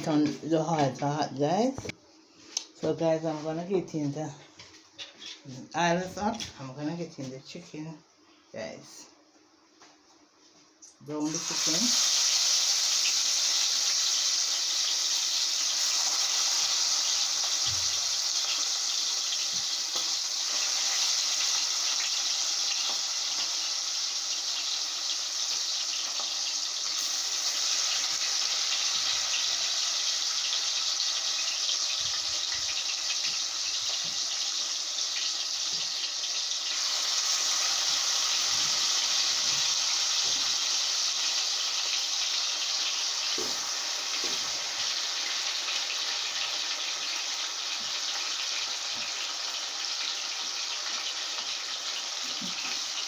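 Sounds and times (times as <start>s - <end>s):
chicken sizzling in hot oil: 11.1s - 53.0s.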